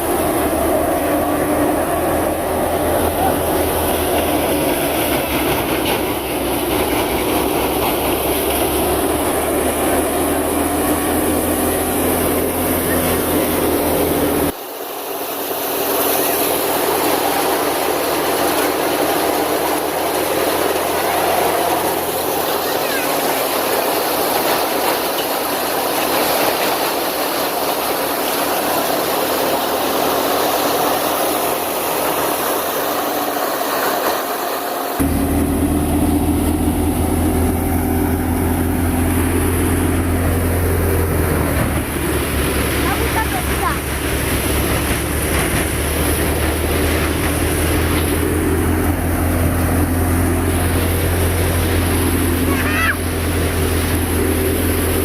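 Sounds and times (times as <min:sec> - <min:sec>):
low engine hum: 0:00.0 - 0:14.6, 0:35.0 - 0:55.0
thresher mechanical rush: 0:00.0 - 0:55.0.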